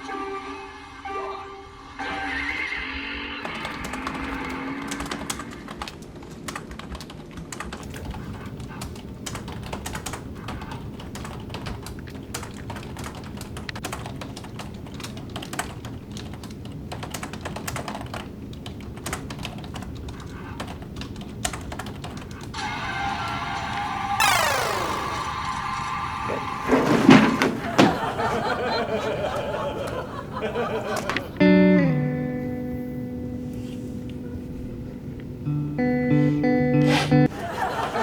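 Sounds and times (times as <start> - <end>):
typing clicks: 3.7 - 22.4.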